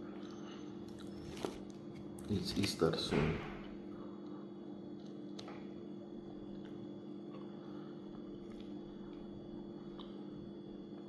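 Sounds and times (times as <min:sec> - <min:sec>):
steady low tonal hum: 0:00.0 - 0:11.0.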